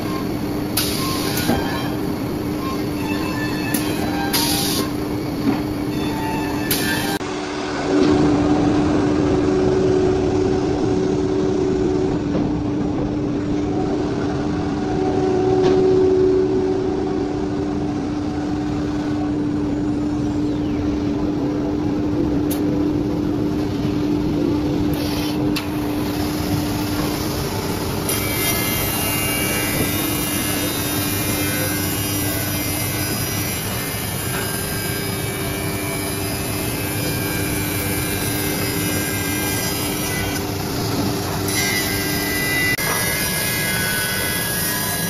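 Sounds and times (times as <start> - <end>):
rushing wood cutting noise: 24.9 - 45.0.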